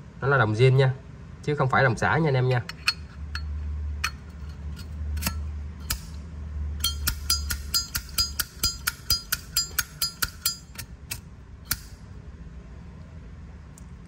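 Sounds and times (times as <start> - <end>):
metal lighter clinking: 6.8 - 12.0.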